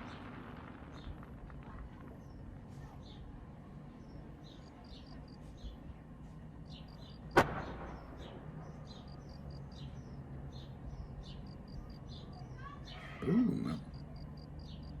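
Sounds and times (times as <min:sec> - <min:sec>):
firework bang with echo: 0:07.4 - 0:08.4.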